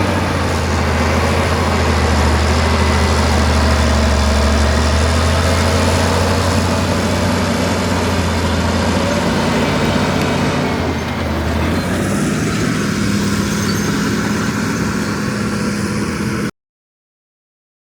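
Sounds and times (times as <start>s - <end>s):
bulldozer diesel engine running: 0.0s - 16.5s.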